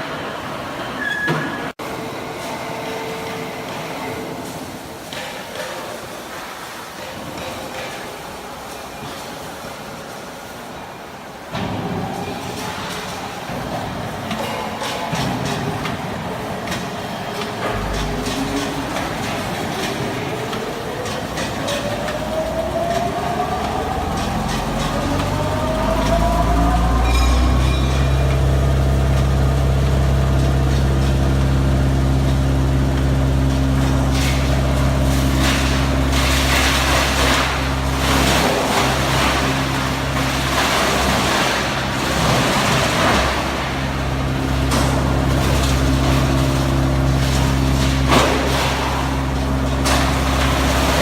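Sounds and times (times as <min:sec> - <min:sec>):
wood chipper running: 0:11.5 - 0:51.0.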